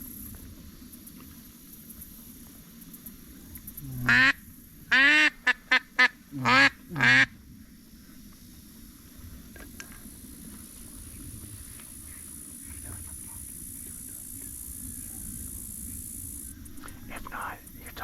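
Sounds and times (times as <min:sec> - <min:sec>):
duck call quacks: 0:04.0 - 0:07.3.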